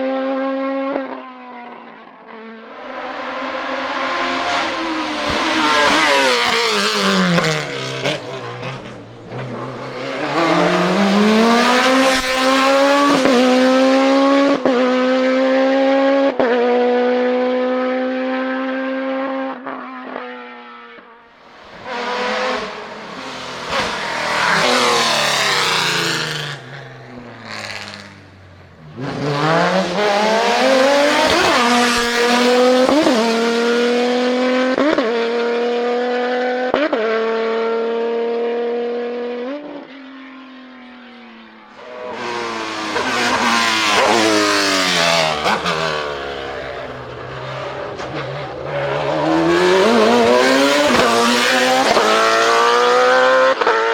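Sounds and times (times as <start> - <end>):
racing engines accelerating: 0.0 - 53.9
car engine shifting gear: 47.5 - 53.9.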